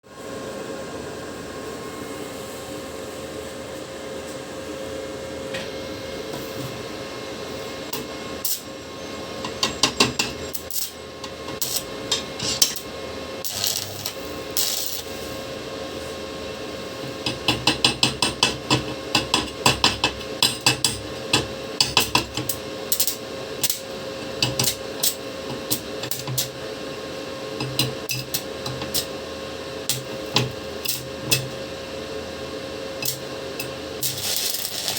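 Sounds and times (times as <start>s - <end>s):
electrical hum: 0.1s - 34.9s.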